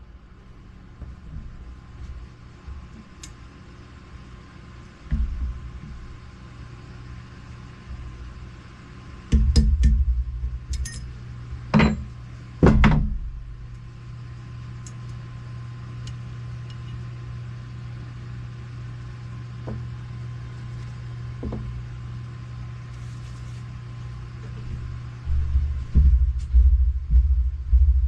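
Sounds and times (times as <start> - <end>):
steady low hum: 0.0 - 28.0
knocks: 11.7 - 13.2.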